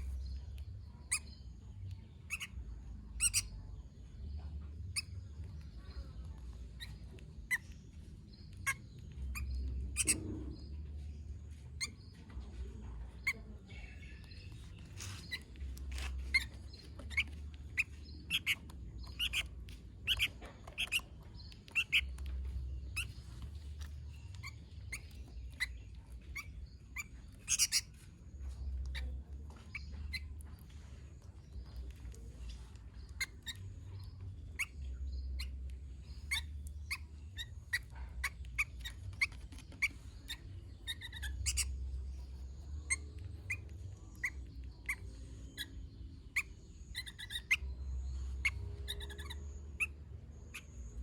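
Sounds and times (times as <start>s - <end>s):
bird chirping: 0.0s - 51.0s
low background rumble: 0.0s - 51.0s.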